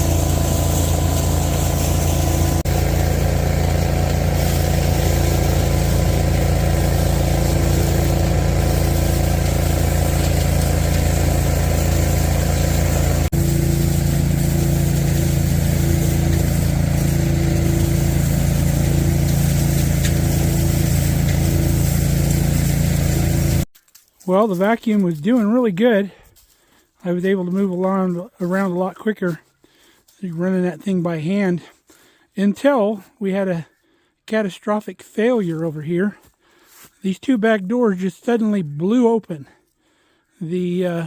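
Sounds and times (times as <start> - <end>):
leaf vacuum engine droning: 0.0 - 26.8.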